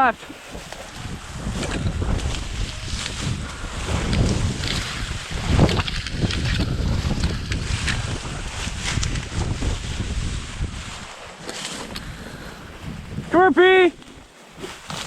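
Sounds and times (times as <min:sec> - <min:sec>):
footsteps through brush and snow: 0:00.0 - 0:13.3, 0:13.9 - 0:15.0
wind buffeting microphone: 0:00.0 - 0:15.0.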